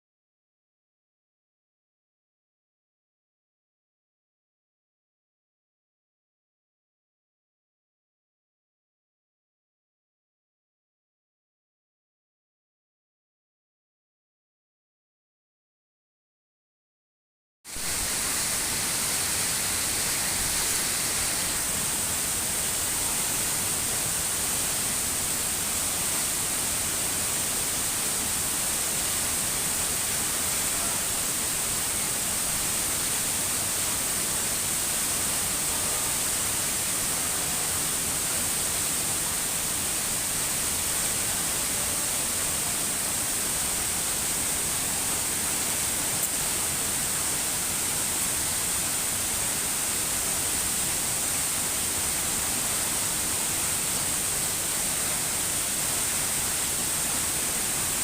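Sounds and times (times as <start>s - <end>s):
waterfall rushing: 17.7s - 58.0s.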